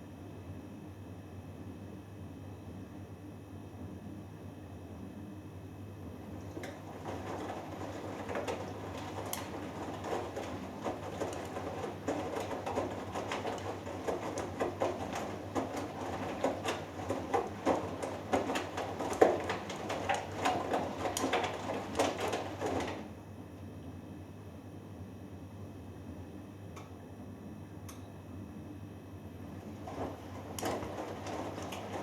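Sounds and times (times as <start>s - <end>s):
laundry sloshing in washing machine drum: 6.2s - 23.2s, 29.4s - 32.0s.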